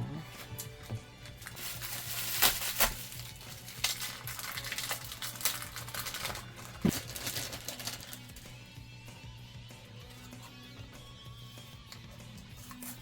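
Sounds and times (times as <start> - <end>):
package crinkly rustling: 0.4 - 8.6.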